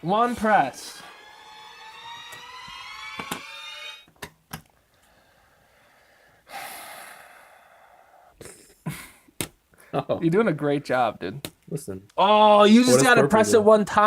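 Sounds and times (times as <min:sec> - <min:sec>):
electronic rising tone: 0:00.0 - 0:04.1.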